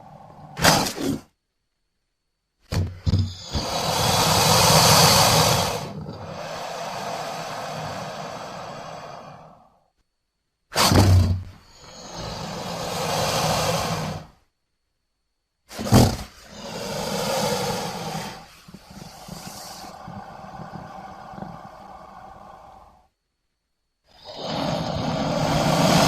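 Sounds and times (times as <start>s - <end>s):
crocodilian growling: 16.4s - 23.1s, 24.2s - 26.0s.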